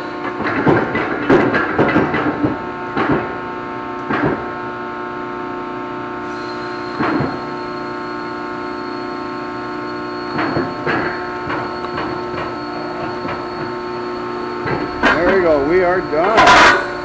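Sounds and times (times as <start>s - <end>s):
shop machinery humming: 0.0s - 17.0s
steel pieces clanking: 14.6s - 17.0s.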